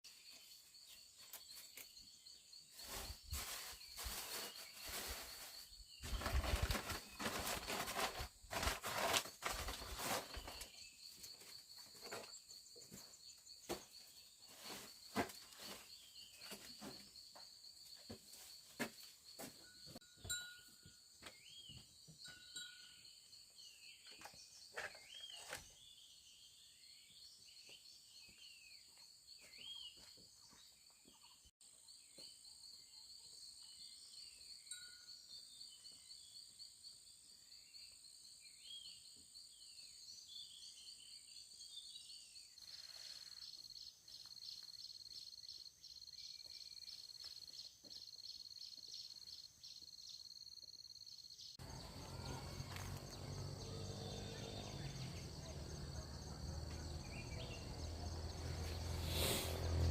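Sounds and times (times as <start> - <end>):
high-pitched insect chorus: 42.6 - 59.9.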